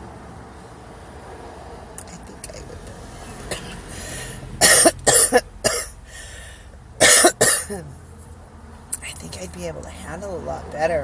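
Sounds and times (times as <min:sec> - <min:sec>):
woman coughing hard: 0:03.5 - 0:06.0, 0:07.0 - 0:07.9.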